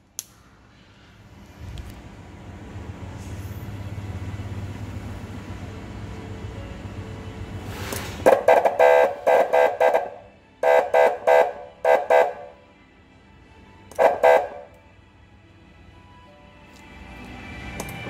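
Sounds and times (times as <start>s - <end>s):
electronic horn blasts: 8.2s - 12.7s, 13.9s - 14.8s.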